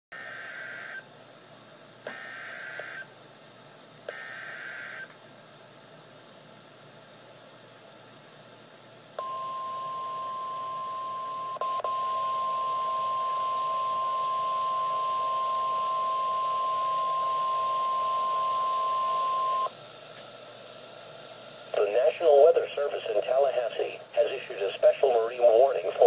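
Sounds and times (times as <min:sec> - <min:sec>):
radio hiss: 0:02.0 - 0:03.1, 0:04.0 - 0:05.1, 0:17.6 - 0:26.0.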